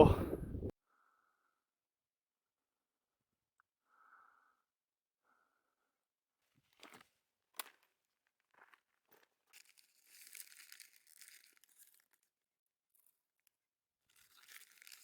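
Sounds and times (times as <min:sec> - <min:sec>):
faint rustling and crinkling: 0:06.5 - 0:15.0.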